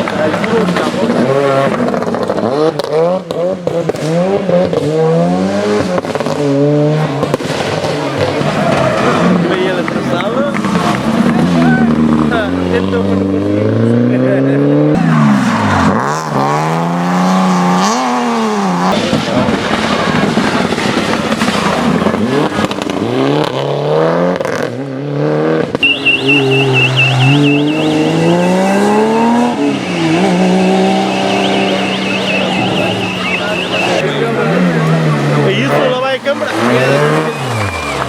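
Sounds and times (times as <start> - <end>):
rally car engine revving: 0.0 - 38.0
high-pitched squeal: 25.8 - 35.4.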